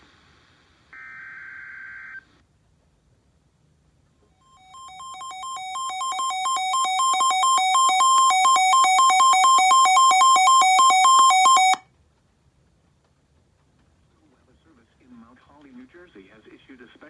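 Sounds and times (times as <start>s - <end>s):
alternating beeping alarm tones: 4.5s - 11.8s.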